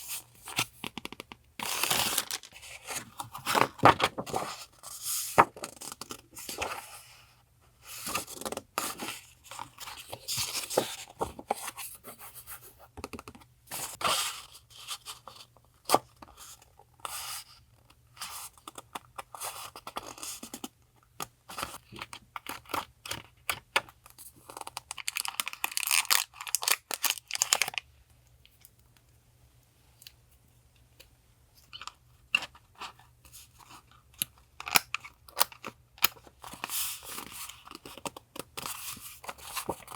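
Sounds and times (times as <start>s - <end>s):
paper rustling and crinkling: 1.6s - 6.9s.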